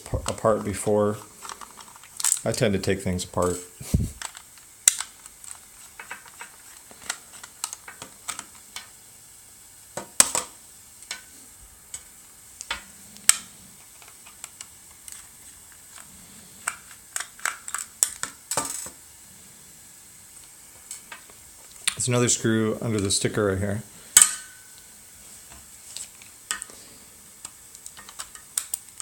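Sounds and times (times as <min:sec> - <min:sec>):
plastic trackball parts clicking: 0:00.1 - 0:02.6, 0:04.2 - 0:08.9, 0:12.6 - 0:18.9, 0:27.4 - 0:29.0.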